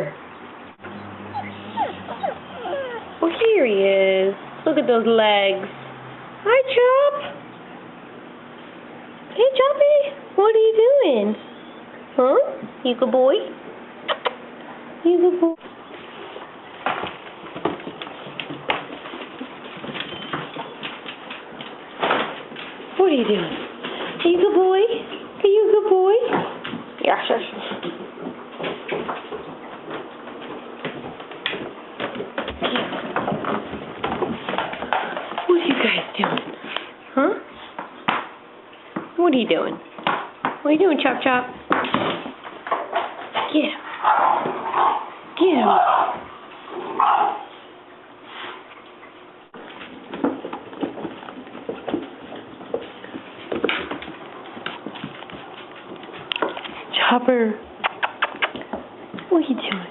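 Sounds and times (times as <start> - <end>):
puppy grunts and yips: 0.8 - 3.2
puppy clicks and scuffling: 15.7 - 25.3, 26.2 - 37.0, 48.7 - 59.9.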